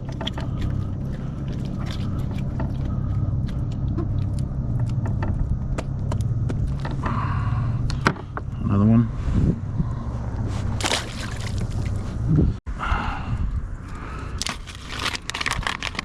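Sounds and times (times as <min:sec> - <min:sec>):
steady low rumble: 0:00.0 - 0:16.0.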